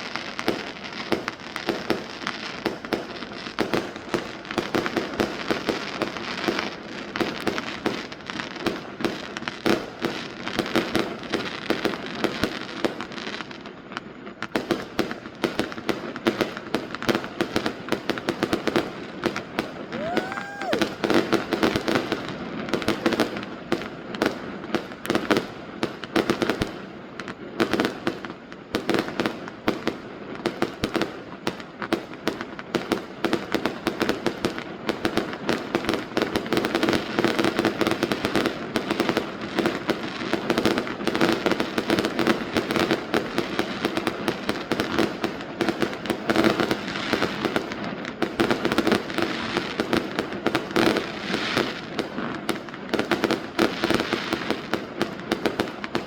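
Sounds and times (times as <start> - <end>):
fireworks bangs and crackles: 0.0 - 56.0.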